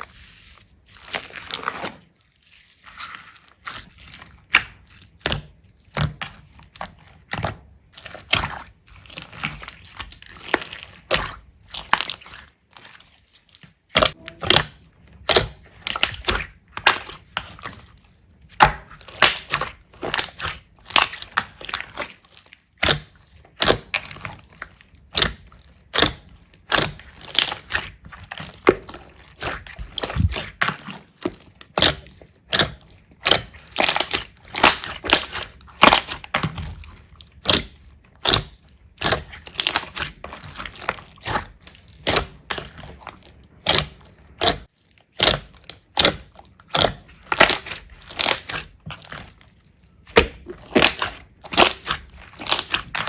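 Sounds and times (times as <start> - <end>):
slime crackling and popping: 18.5 - 49.4, 50.0 - 53.0.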